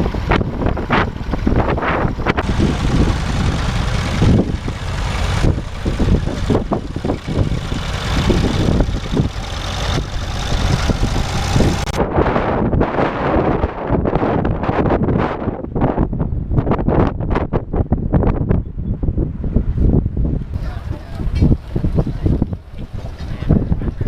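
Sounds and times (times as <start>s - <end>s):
tractor engine running: 0.0s - 12.0s
wind buffeting microphone: 0.0s - 24.0s.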